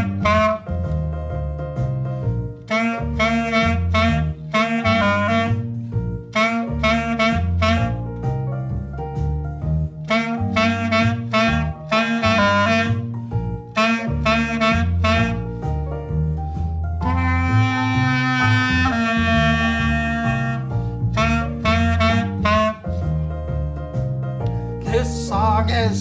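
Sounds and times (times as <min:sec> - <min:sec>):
woodwind lead melody: 0:00.0 - 0:01.1, 0:02.6 - 0:08.3, 0:10.0 - 0:16.3, 0:17.0 - 0:23.7
bass line: 0:00.0 - 0:26.0.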